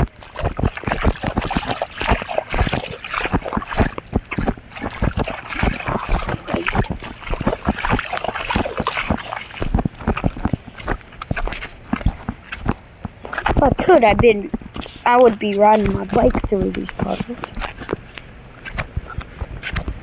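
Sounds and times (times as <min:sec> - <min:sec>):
footsteps splashing through puddles: 0:00.0 - 0:20.0.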